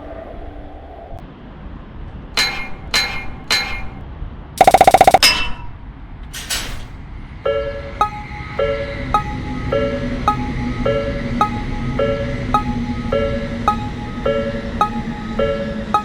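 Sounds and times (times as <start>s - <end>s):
bright clinking strikes: 7.5s - 16.0s.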